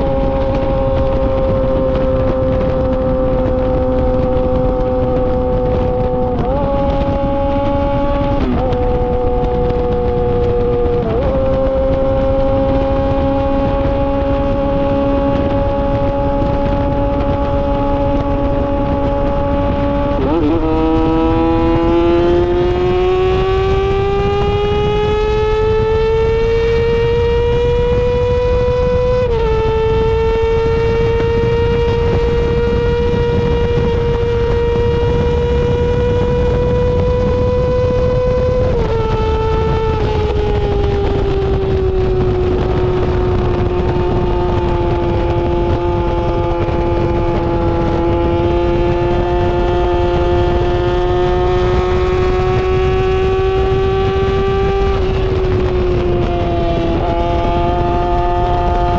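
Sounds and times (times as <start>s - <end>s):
motorcycle engine at high revs: 0.0s - 58.9s.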